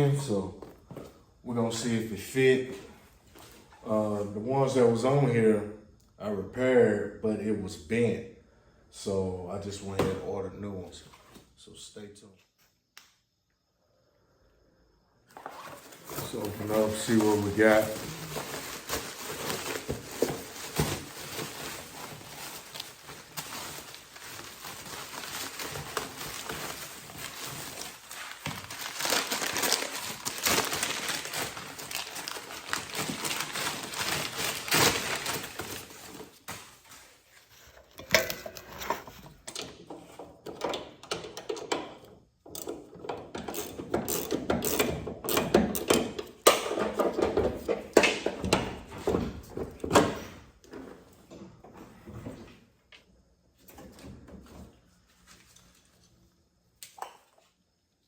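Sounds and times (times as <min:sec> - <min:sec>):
packaging rustling and crinkling: 0:15.3 - 0:37.6.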